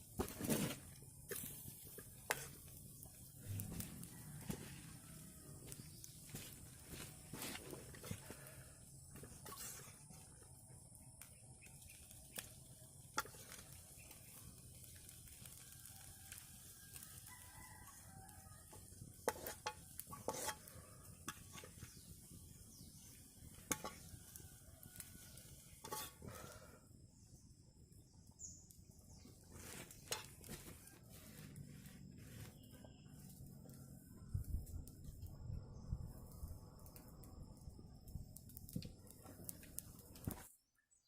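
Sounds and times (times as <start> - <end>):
food sizzling in a pan: 13.1 - 26.3.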